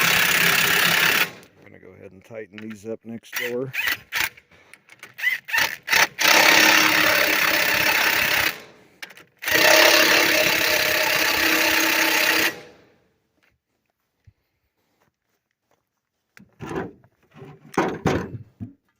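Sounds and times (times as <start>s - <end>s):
power tool tightening bolts: 0.0s - 1.6s, 2.6s - 12.8s.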